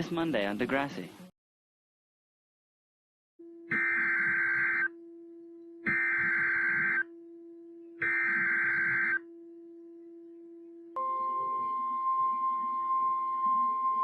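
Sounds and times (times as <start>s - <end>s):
steady low hum: 3.4s - 11.0s
harsh digital data tones: 3.7s - 4.9s, 5.8s - 7.1s, 8.0s - 9.2s.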